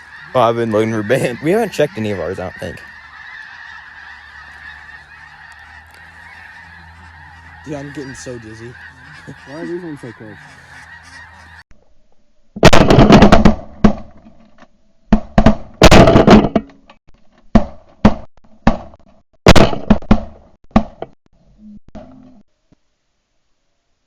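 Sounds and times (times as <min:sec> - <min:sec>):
shotgun blasts: 0:12.6 - 0:14.0.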